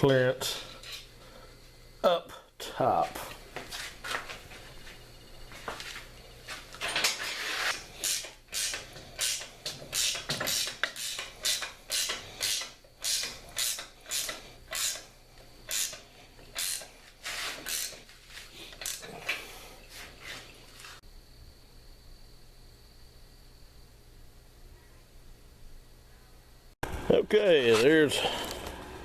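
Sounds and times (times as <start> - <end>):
ratchet wrench clicking: 8.0 - 15.1, 15.7 - 16.9, 17.6 - 18.0.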